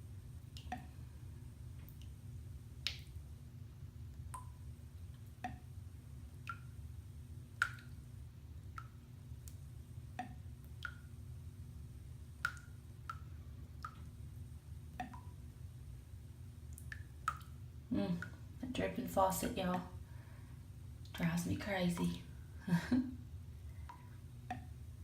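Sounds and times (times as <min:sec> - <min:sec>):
faucet dripping into bathwater: 0:00.4 - 0:03.2, 0:04.1 - 0:11.3, 0:12.2 - 0:15.5, 0:16.5 - 0:20.1, 0:23.6 - 0:24.8.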